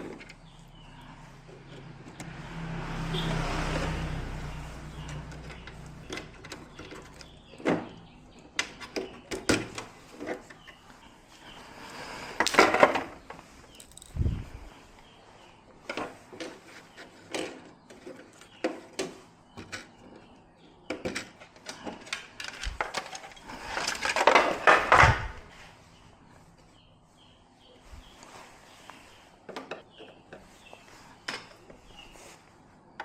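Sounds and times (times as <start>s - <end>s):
hard objects clattering: 12.3s - 14.4s, 20.9s - 25.3s.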